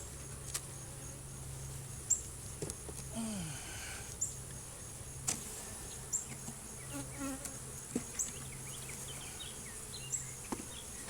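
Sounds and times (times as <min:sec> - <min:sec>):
honeybees buzzing: 0:03.4 - 0:11.0.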